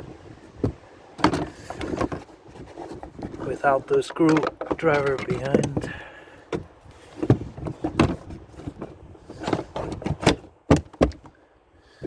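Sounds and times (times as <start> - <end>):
plastic trim panels knocking and clicking: 4.2 - 8.8, 9.4 - 11.3.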